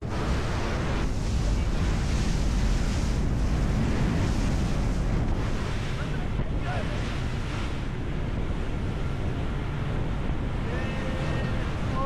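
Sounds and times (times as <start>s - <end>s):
water rushing past boat: 0.0s - 12.0s
wind buffeting microphone: 0.0s - 12.0s.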